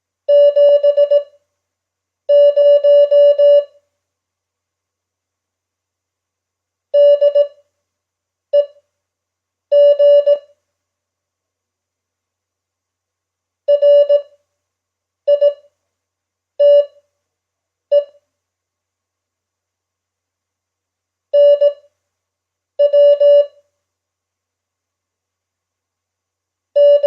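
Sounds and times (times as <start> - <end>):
morse code beeps: 0.3 - 1.2, 2.3 - 3.7, 21.4 - 21.8, 22.8 - 23.5, 26.8 - 27.0.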